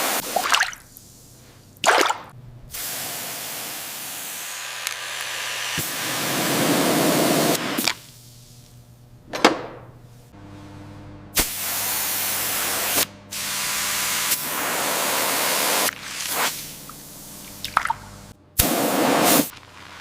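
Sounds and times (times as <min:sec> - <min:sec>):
pressurised spray hissing: 0:02.7 - 0:08.5, 0:11.4 - 0:17.6, 0:18.6 - 0:19.5
faint low hum: 0:08.2 - 0:11.4.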